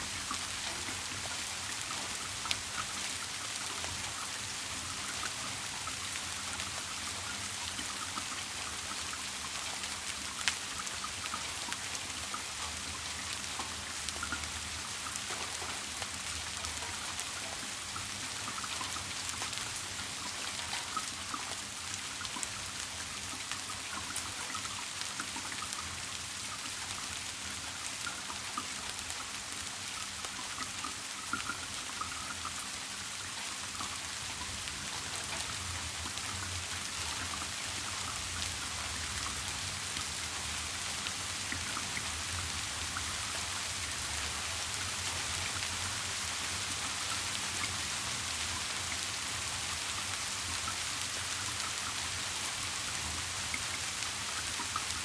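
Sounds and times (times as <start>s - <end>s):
sharp raindrop clicks: 0.0s - 55.0s
steady rain falling: 0.0s - 55.0s.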